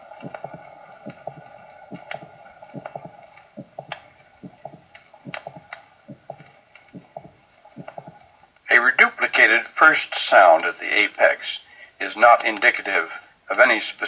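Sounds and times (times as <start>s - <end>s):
heartbeat through stethoscope: 0.0s - 8.4s
recording hum: 0.0s - 14.0s.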